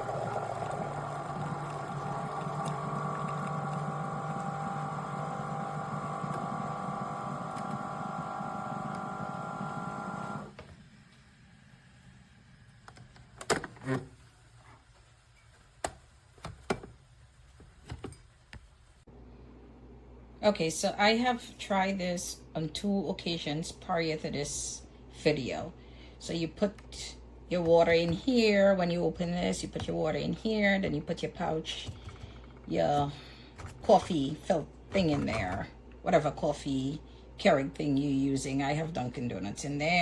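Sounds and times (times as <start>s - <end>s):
coffee maker buzzing hum: 0.0s - 13.0s.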